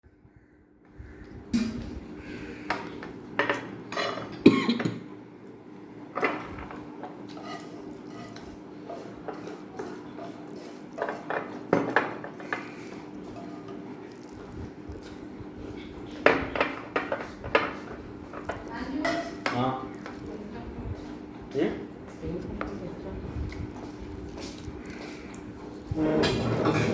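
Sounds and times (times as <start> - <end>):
steady low hum: 0.1 - 6.7
pots and utensils clattering: 1.6 - 5.0, 6.2 - 14.0, 14.7 - 19.8, 25.9 - 26.9.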